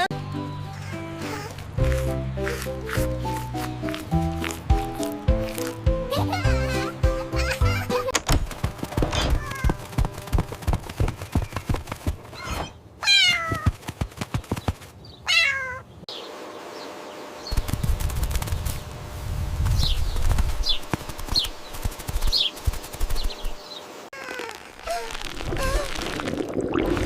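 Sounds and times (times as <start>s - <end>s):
cartoon kitten meowing: 12.4s - 13.7s, 15.3s - 15.8s.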